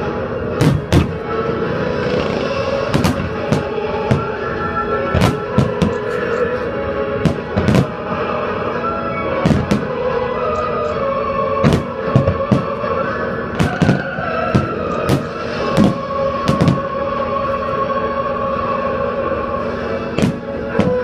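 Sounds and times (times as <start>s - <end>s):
background music sustained notes: 0.0s - 21.0s
fireworks bursting with bangs: 0.5s - 6.5s, 7.1s - 8.4s, 9.3s - 10.2s, 11.6s - 17.2s, 20.1s - 21.0s.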